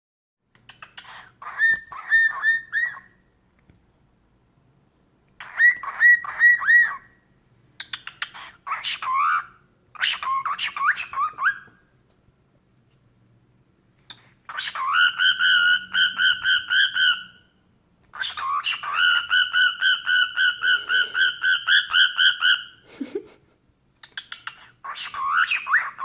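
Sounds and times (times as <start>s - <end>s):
cockatiel chirping: 0.6s - 3.2s, 5.4s - 7.2s, 7.8s - 11.8s, 14.0s - 22.8s, 24.0s - 26.0s.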